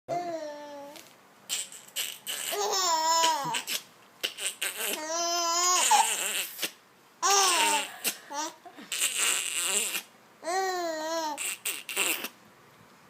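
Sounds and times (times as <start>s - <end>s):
baby laughing and squealing: 1.5s - 12.4s.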